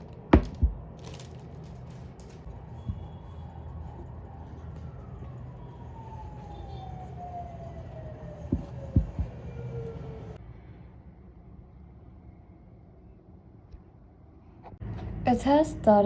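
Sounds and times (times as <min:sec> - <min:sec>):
city traffic hum: 0:00.0 - 0:16.0
short dull thumps: 0:00.4 - 0:00.9, 0:08.5 - 0:09.4
distant siren winding down: 0:02.5 - 0:10.4.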